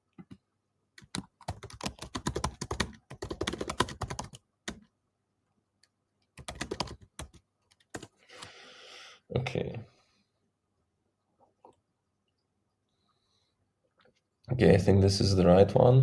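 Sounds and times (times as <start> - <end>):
computer keyboard typing: 1.0 - 4.9, 6.3 - 8.2.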